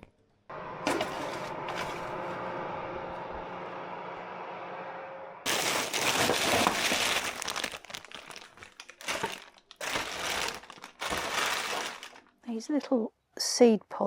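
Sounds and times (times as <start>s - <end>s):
steady low hum: 0.5s - 5.5s
dry plant stems rustling: 5.5s - 12.4s.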